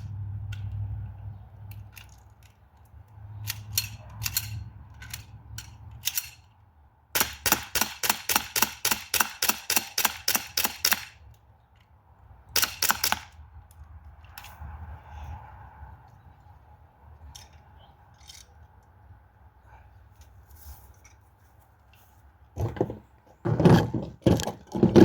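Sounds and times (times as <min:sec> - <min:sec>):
air pistol shots: 0:07.2 - 0:11.1.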